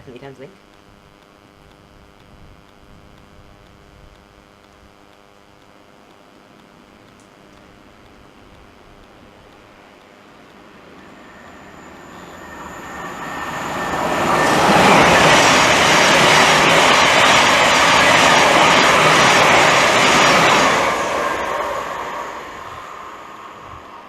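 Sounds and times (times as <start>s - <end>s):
train passing at speed: 9.8s - 24.0s.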